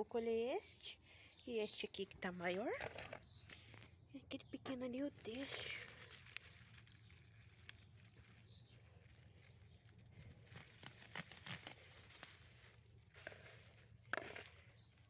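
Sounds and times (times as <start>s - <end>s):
lettuce leaves rustling: 4.5s - 15.0s.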